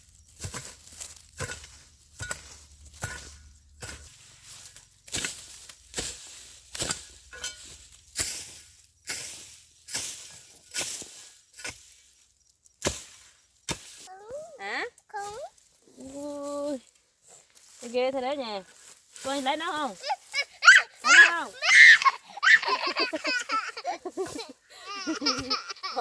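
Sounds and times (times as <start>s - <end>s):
hand tool chopping into ground: 0.0s - 12.1s, 12.7s - 14.1s.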